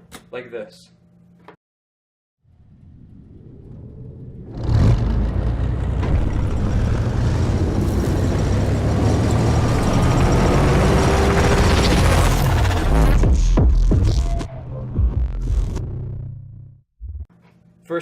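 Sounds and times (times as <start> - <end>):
heavy bass soundtrack: 11.2 - 17.2.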